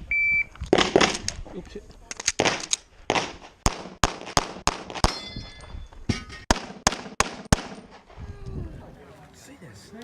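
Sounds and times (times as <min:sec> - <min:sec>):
pistol shots: 0:02.4 - 0:05.3, 0:06.5 - 0:08.0
metallic ringing: 0:05.1 - 0:06.4.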